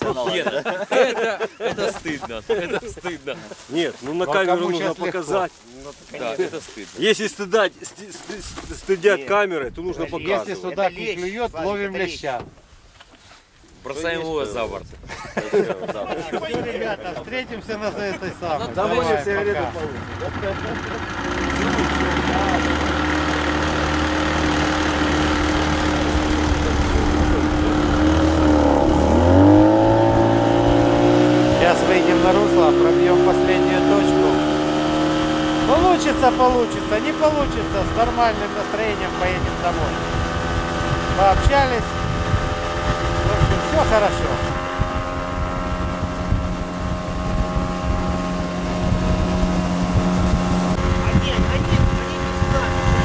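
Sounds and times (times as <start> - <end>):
wind buffeting microphone: 14.3 - 15.2, 25.1 - 32.4, 34.4 - 53.0
outboard motor revving: 17.8 - 53.0.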